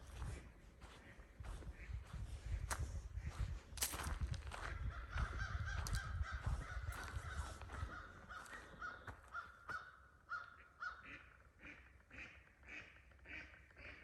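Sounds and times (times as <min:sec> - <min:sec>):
footsteps on trail: 0:00.0 - 0:09.8.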